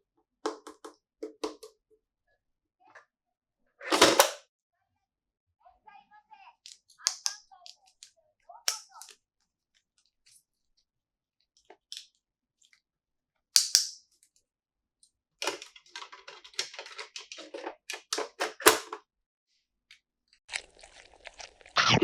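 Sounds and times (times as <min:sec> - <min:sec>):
plastic toy pieces clicking: 0:06.7 - 0:08.1, 0:13.6 - 0:14.4, 0:15.4 - 0:19.0
sharp plastic snap: 0:07.0 - 0:07.4, 0:13.6 - 0:14.0.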